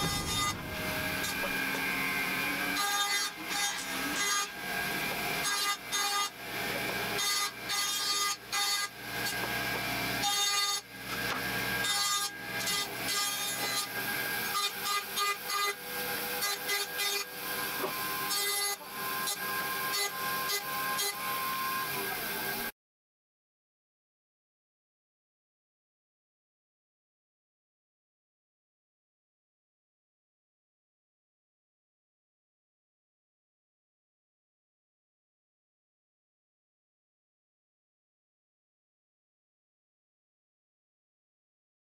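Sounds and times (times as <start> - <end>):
band saw cutting wood: 0.0 - 22.7.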